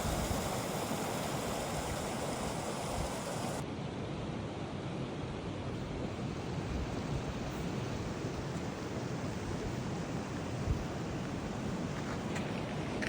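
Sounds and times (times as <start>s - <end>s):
water rushing down waterfall: 0.0s - 3.6s.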